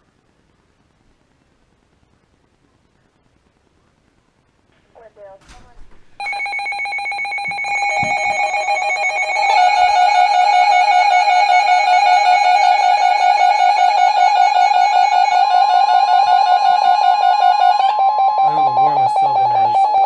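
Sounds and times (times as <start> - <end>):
wavering electronic warning alarm: 6.2 - 20.0.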